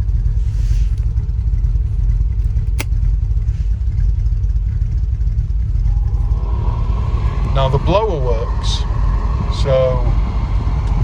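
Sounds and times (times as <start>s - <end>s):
car engine idling: 0.0s - 11.0s
dashboard switch click: 2.4s - 3.0s.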